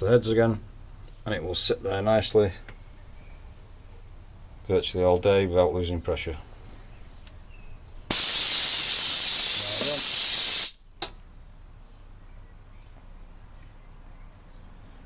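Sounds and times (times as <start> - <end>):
compressed air hissing from tank: 8.1 - 10.8
short air puff: 8.1 - 10.8.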